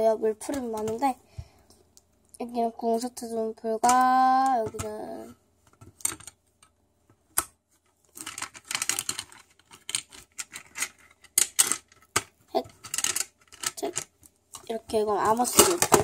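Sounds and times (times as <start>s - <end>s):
plastic stationery clicking and rattling: 8.2s - 14.1s.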